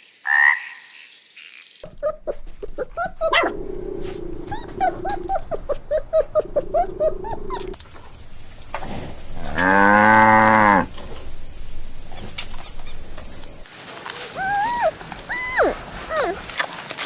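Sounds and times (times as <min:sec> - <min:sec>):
dog yelping: 0:01.8 - 0:07.8, 0:14.4 - 0:16.4
cow mooing: 0:08.8 - 0:11.0.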